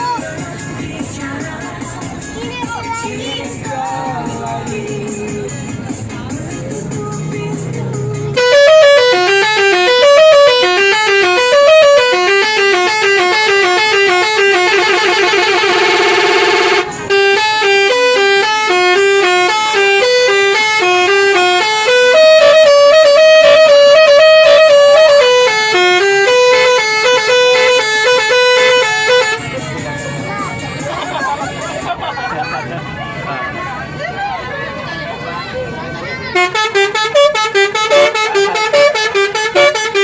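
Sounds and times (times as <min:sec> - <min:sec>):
musical bus horn: 0:06.8 - 0:34.1, 0:34.9 - 0:40.0.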